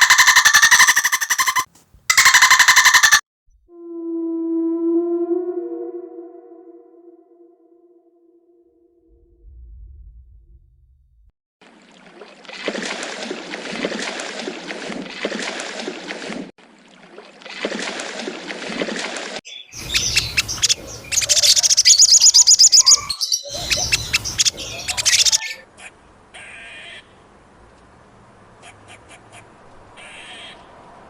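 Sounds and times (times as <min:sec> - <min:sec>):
birds chirping: 0:00.0 - 0:03.2, 0:19.5 - 0:25.6
fast high bird trill: 0:00.0 - 0:03.2, 0:19.8 - 0:25.6.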